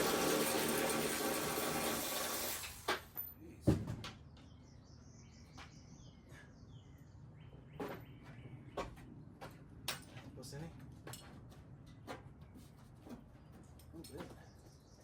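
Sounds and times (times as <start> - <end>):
birds chirping: 3.4 - 10.8, 11.7 - 15.0.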